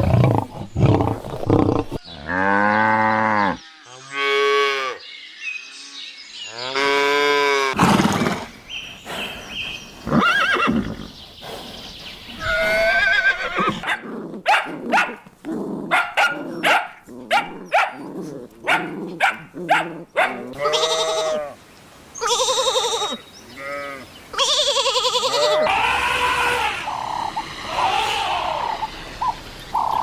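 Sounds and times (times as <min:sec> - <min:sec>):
farm animal calls: 0:18.7 - 0:21.6, 0:22.2 - 0:30.0.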